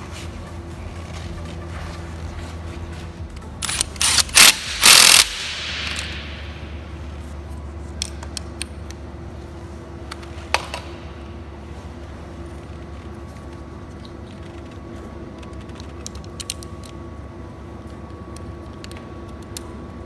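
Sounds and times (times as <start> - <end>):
steady low hum: 0.0 - 20.0
pneumatic tool bursts with hiss: 3.7 - 6.2.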